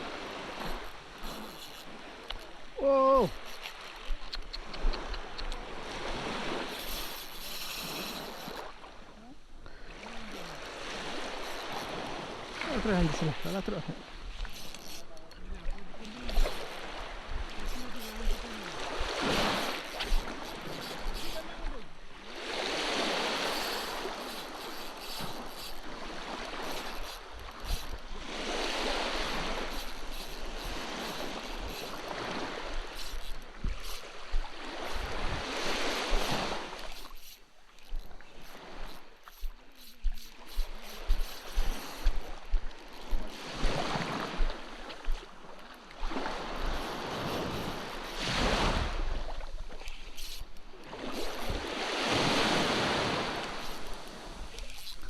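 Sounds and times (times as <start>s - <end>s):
sea waves washing in: 0.0s - 4.0s, 15.9s - 37.3s, 37.9s - 54.9s.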